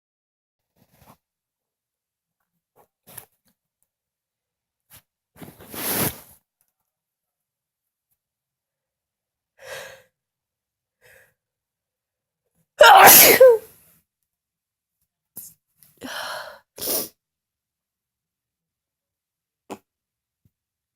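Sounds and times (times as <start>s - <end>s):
person sneezing: 12.8s - 13.6s.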